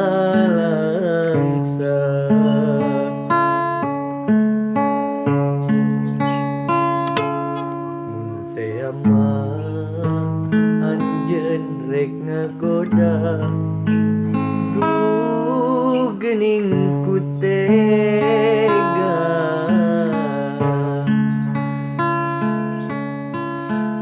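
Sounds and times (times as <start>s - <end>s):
acoustic guitar: 0.0s - 24.0s
melody with vibrato: 5.5s - 8.9s.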